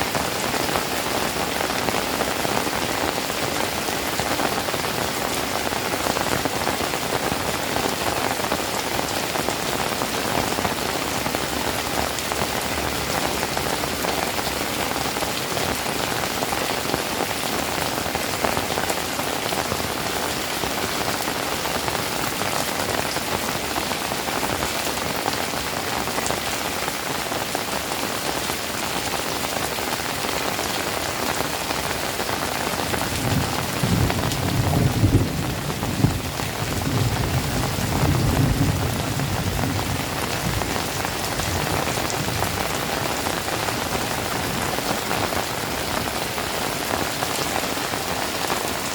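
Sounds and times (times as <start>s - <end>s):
rain falling: 0.0s - 48.9s
low rumble of thunder: 33.0s - 43.1s.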